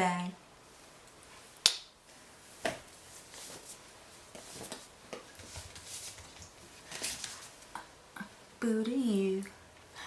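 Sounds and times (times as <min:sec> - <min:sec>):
short rustles of handling: 0:02.6 - 0:07.6.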